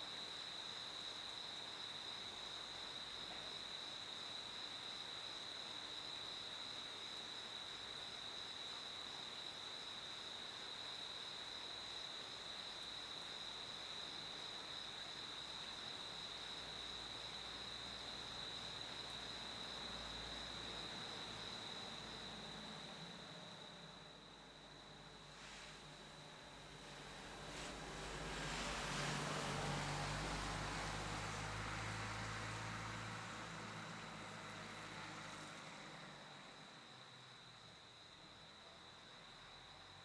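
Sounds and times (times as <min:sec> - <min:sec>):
faint background hiss: 0:00.0 - 0:40.0
cricket trilling: 0:07.7 - 0:25.3.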